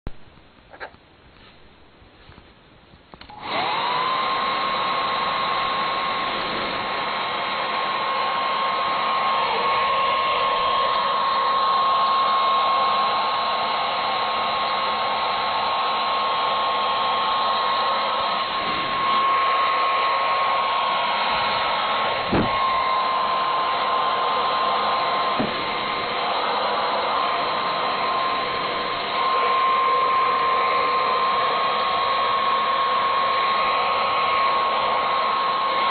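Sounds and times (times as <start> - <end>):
hair dryer whining: 3.2 - 35.9
rush of air: 18.5 - 19.5.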